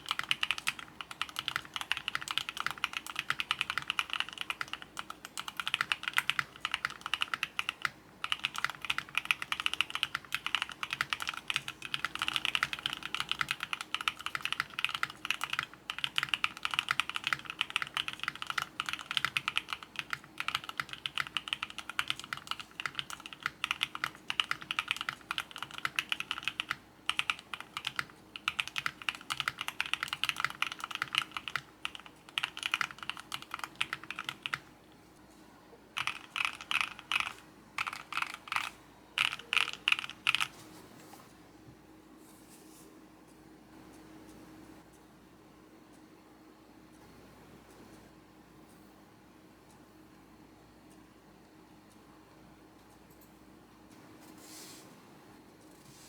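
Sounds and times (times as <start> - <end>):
mechanical keyboard typing: 0.0 - 34.7, 36.0 - 40.5.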